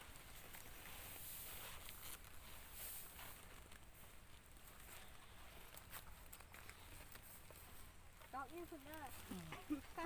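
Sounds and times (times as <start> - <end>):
outdoor hiss: 0.0 - 5.2
rice rustling: 0.0 - 10.0.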